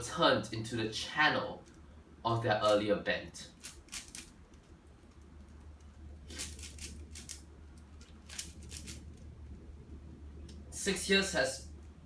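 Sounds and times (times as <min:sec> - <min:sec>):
low steady hum: 0:00.0 - 0:12.0
plastic puzzle clicking: 0:03.6 - 0:05.2, 0:06.3 - 0:09.0.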